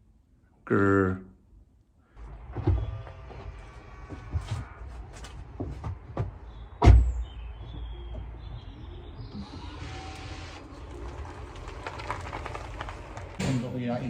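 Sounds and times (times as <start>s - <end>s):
loud thump: 5.6s - 7.3s.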